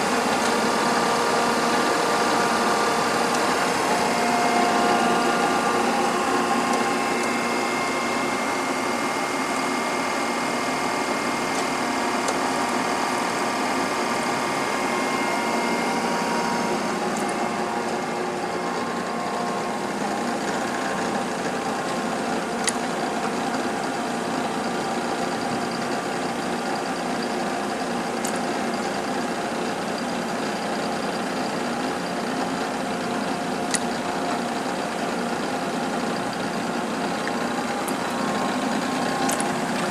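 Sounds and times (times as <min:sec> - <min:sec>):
grinding machine humming: 0:00.0 - 0:39.9.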